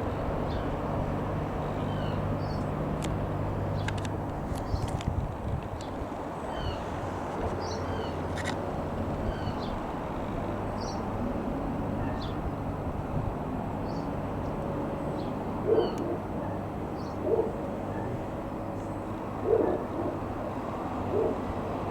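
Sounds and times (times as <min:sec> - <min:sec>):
low engine drone: 0:00.0 - 0:21.9
small birds chirping: 0:15.1 - 0:16.1
low hooting call: 0:15.6 - 0:18.3.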